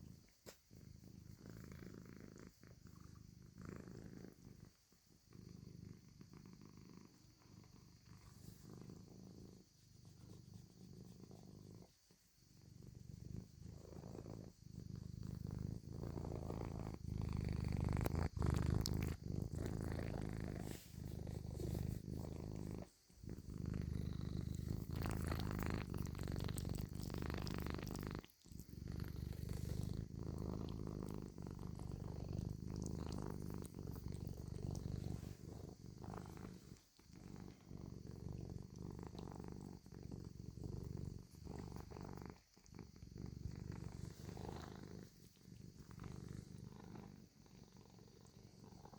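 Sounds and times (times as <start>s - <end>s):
cat purring: 0.0s - 48.9s.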